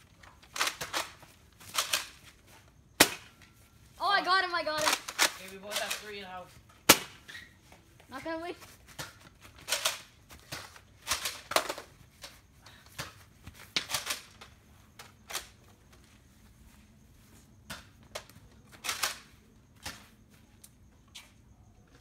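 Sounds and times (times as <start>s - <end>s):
toy blasters clicking and popping: 4.7s - 6.2s, 9.0s - 10.1s.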